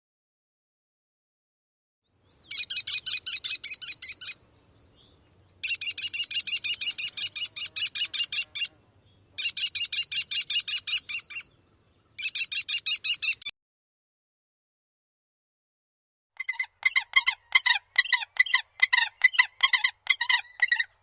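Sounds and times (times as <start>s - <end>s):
songbird trilling: 2.1s - 13.5s, 16.4s - 21.0s.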